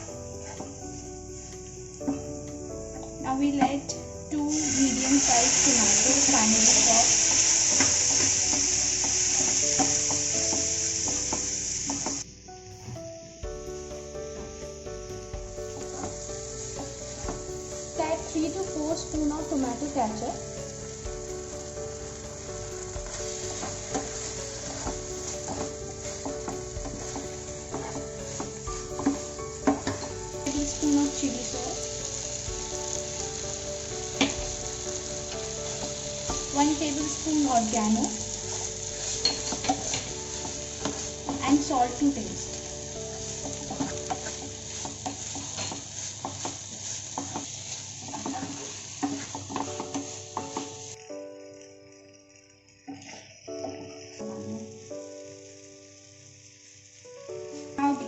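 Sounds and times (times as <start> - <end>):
vegetables sizzling in a pan: 0.0 - 58.0
spoon scraping a pan: 23.1 - 33.0, 35.2 - 50.8.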